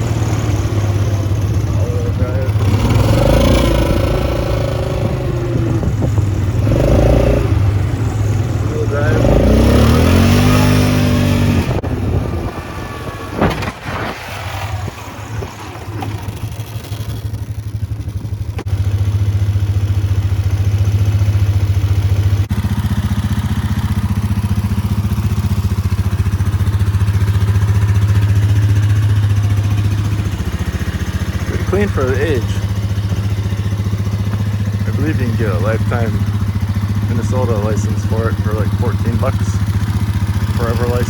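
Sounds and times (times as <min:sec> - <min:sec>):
atv engine running: 0:00.0 - 0:41.0.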